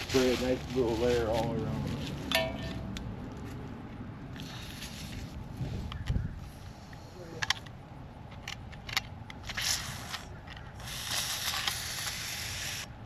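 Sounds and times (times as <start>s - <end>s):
aerosol can spraying: 10.8s - 12.9s.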